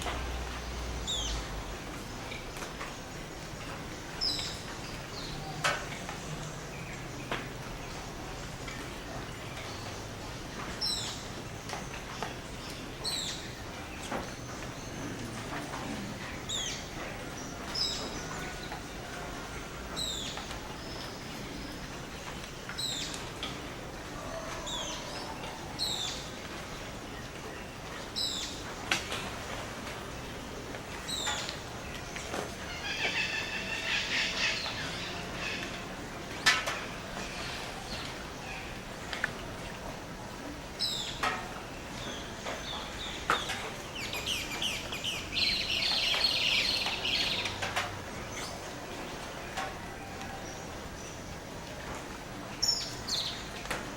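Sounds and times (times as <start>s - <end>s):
birds chirping and calling: 32.7s - 35.8s, 42.0s - 47.7s.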